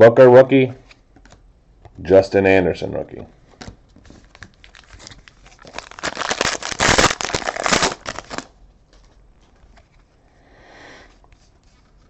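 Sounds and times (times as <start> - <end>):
wrapper tearing and crinkling: 4.2 - 8.5.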